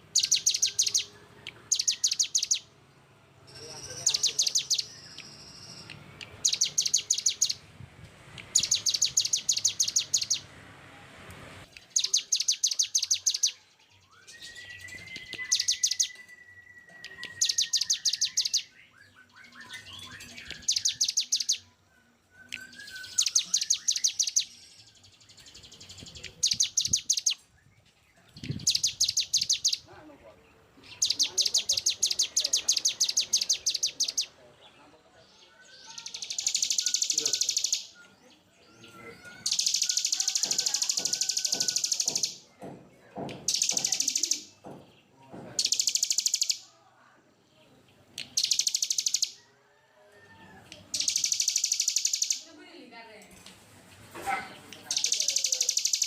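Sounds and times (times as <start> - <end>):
songbird singing rough notes: 0.0 - 2.8, 3.4 - 7.8, 8.4 - 10.5, 11.6 - 46.8, 47.4 - 49.9, 50.6 - 52.5, 54.5 - 56.0
long steady whistle: 16.1 - 17.4.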